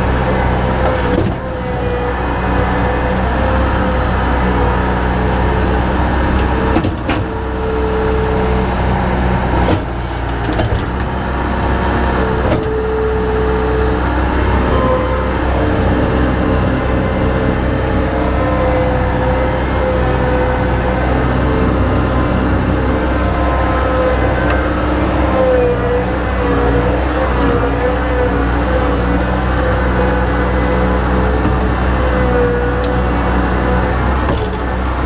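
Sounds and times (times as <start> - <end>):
engine droning with whine: 0.0 - 35.0.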